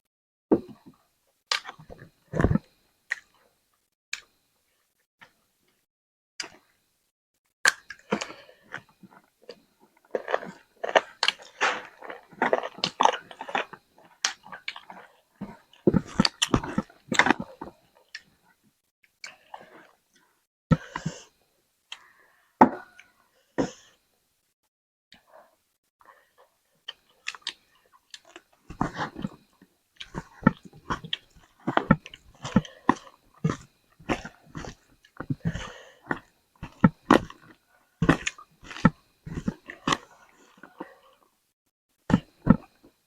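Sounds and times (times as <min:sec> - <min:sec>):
person chewing and biting: 0:10.0 - 0:18.3, 0:30.0 - 0:40.8.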